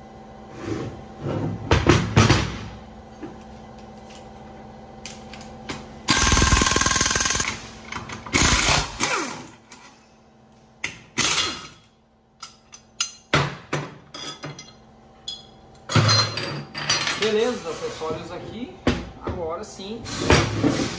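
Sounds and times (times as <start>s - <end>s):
impact wrench rattling: 6.1s - 9.5s.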